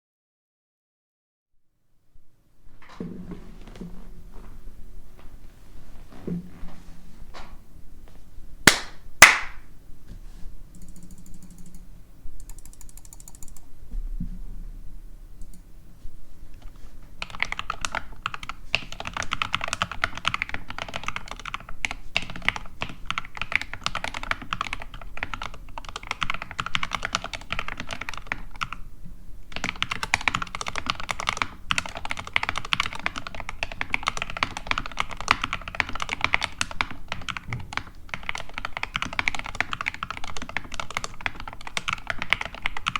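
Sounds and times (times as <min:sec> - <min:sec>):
mechanical keyboard typing: 0:10.7 - 0:13.7, 0:17.2 - 0:28.8, 0:29.5 - 0:42.9.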